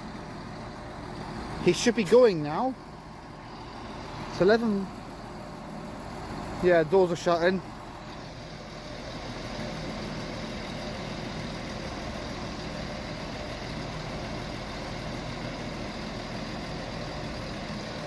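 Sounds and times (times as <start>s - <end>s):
diesel train engines idling: 0.0s - 18.0s.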